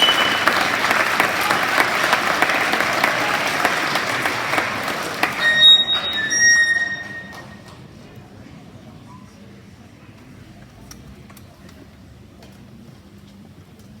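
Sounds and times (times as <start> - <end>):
high steady whistling tone: 0.0 - 1.0, 5.2 - 7.7
audience applauding: 0.0 - 7.9.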